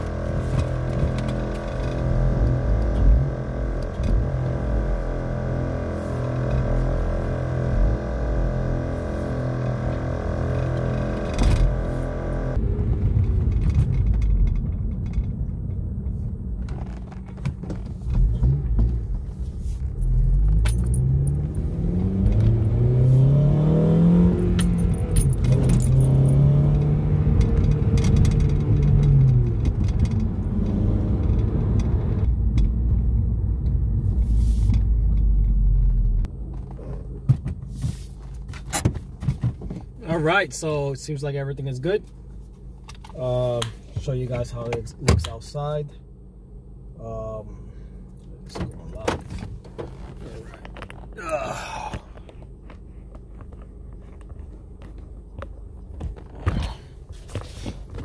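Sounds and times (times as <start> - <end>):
car engine accelerating: 0.0 - 15.8, 18.0 - 37.3.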